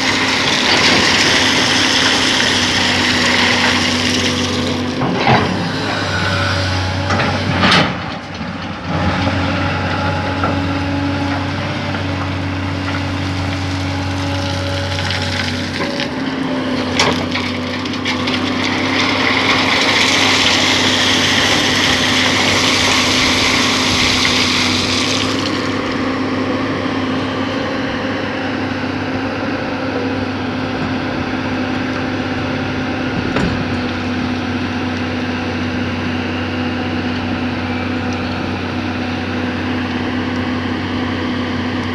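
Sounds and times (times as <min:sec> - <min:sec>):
excavator engine running: 0:00.0 - 0:41.9
excavator bucket knocks: 0:33.0 - 0:34.4.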